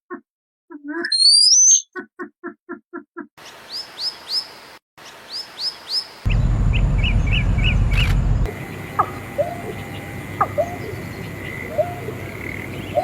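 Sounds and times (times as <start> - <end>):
bird chirps: 0.7 - 2.8, 5.1 - 13.0
low pulsed bird calls: 6.3 - 13.0
low rumbling noise: 6.3 - 13.0
high down-slurred bird notes: 8.5 - 13.0.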